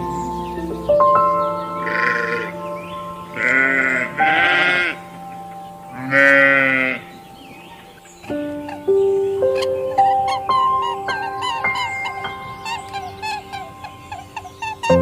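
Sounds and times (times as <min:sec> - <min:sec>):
farm animal bleating: 0:01.8 - 0:02.6, 0:03.3 - 0:05.0, 0:05.9 - 0:08.0.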